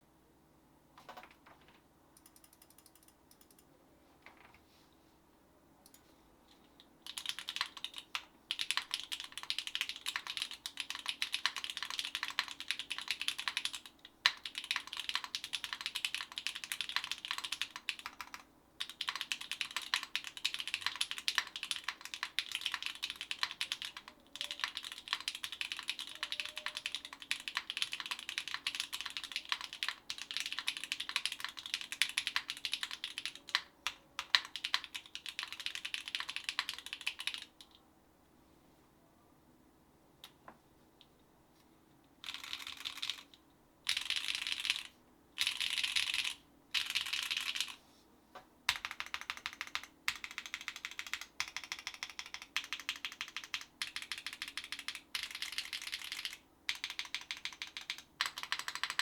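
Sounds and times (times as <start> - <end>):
fast mechanical keyboard typing: 7.0 - 37.7, 42.2 - 47.8, 48.7 - 59.0.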